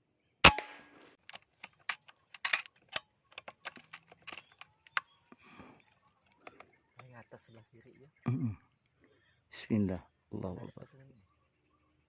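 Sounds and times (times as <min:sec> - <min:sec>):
loud rifle shot: 0:00.4 - 0:01.1
light clicks and rustles: 0:01.2 - 0:07.3.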